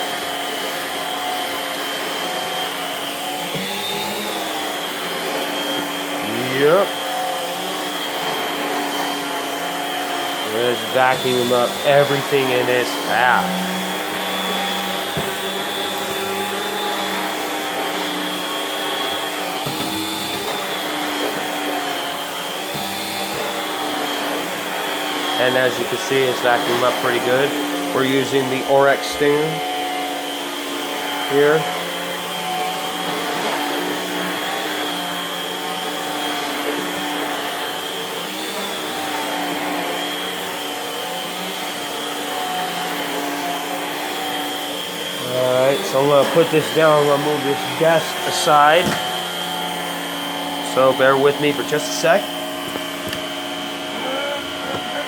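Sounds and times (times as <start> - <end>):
vacuum hose rushing hiss: 1.9 - 30.4, 43.3 - 55.0.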